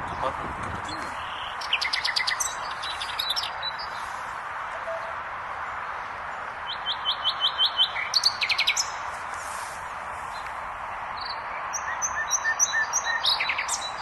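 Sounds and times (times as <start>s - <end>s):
nightingale singing: 0.8s - 5.8s, 6.6s - 9.0s, 11.2s - 14.0s.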